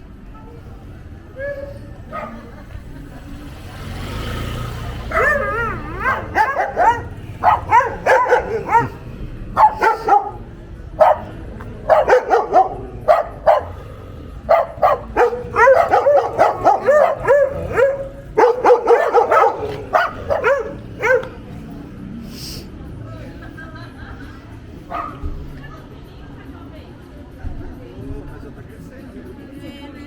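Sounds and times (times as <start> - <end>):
dog barking and yipping: 1.4 - 2.6, 5.0 - 13.8, 14.5 - 21.4, 24.9 - 25.2.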